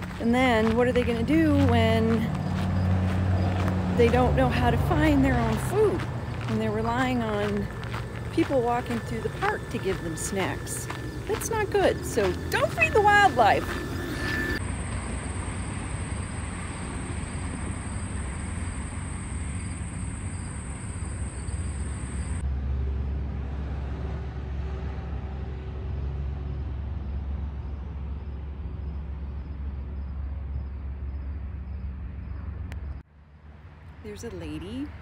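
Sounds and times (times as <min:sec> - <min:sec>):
road traffic rumble: 0:00.0 - 0:28.8, 0:29.7 - 0:35.0
thin high steady tone: 0:06.6 - 0:22.4.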